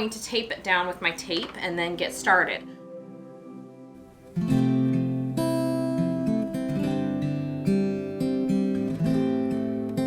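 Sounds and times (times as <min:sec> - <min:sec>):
acoustic guitar strumming: 0:02.9 - 0:10.0.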